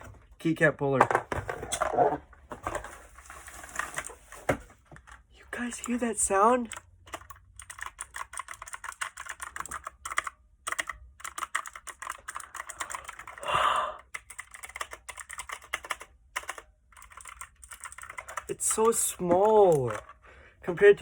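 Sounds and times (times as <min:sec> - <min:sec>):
keyboard typing: 0:05.0 - 0:20.2.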